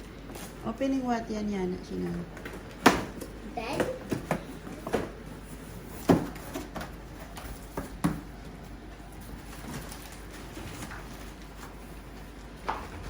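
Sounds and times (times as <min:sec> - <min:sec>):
knocks and thumps on cardboard box: 0:06.0 - 0:06.9, 0:07.6 - 0:08.3.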